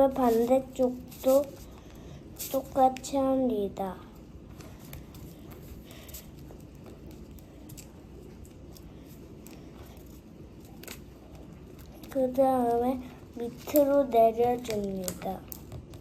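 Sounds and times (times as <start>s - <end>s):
paper crinkling: 0.0s - 3.2s, 4.5s - 16.0s
light taps on paper: 13.6s - 16.0s.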